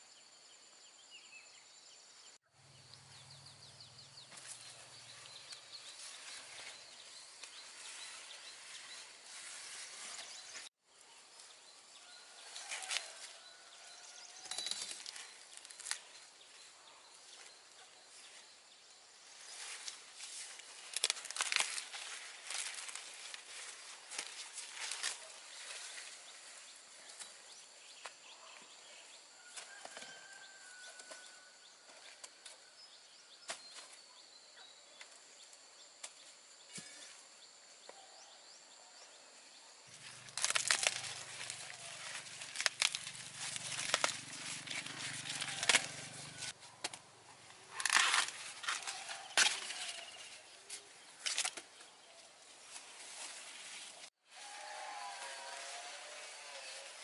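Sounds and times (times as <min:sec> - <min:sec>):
dry material rustling and crackling: 0:19.5 - 0:26.6, 0:40.0 - 0:46.6.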